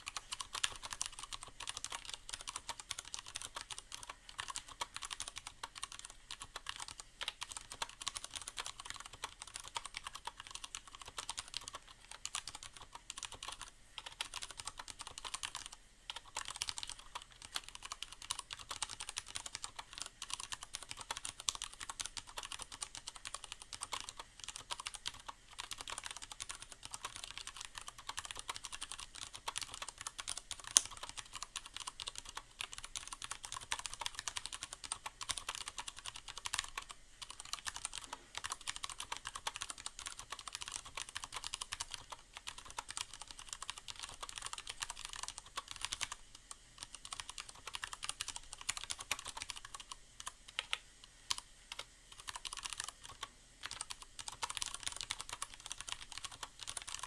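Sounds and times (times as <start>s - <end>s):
fast typing on mechanical keyboard: 0.0s - 57.0s.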